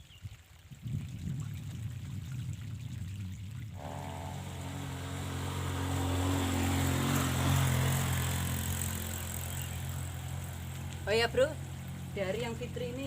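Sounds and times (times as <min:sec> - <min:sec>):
water trickling: 0:00.0 - 0:13.0
small engine humming: 0:03.8 - 0:13.0.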